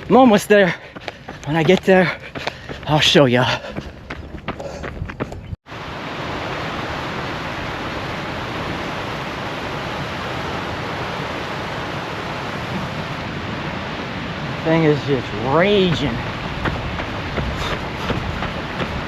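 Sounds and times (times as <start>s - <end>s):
floodwater roaring: 5.7s - 19.0s.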